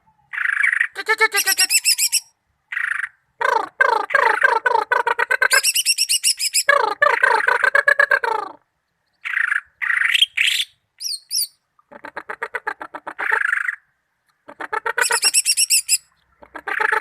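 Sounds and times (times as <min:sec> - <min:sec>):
bird singing rattling trills: 0:05.6 - 0:06.7, 0:15.1 - 0:16.2.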